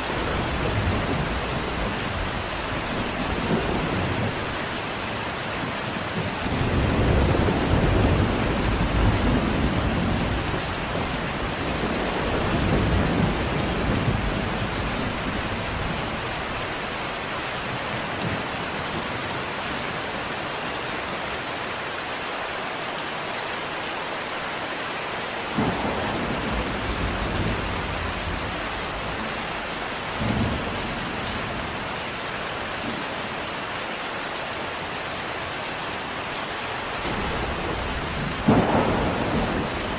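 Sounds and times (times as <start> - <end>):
rolling thunder rumbling: 0.0 - 4.6, 6.1 - 16.6, 25.6 - 31.8, 37.0 - 39.9
steady rain falling: 0.0 - 39.9
sharp thunder claps: 37.0 - 39.9.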